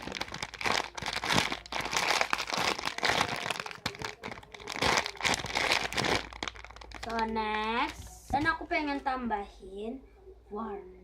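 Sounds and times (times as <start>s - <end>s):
plastic wrapping crinkling: 0.0s - 8.2s.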